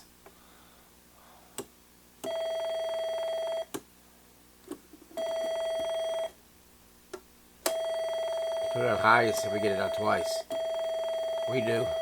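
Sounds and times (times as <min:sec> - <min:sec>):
electronic test instrument beeping: 0:07.7 - 0:12.0.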